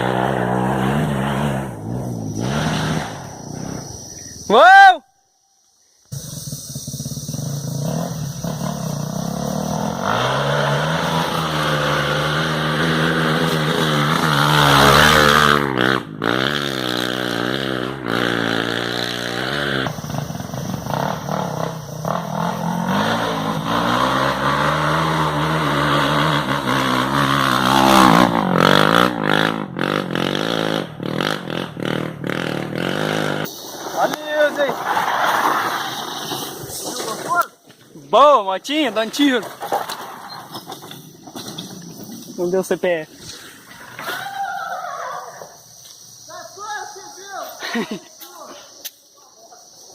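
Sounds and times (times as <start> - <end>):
motorcycle engine revving: 0.0 - 4.2, 6.1 - 37.0
exhaust cracks: 6.1 - 44.1.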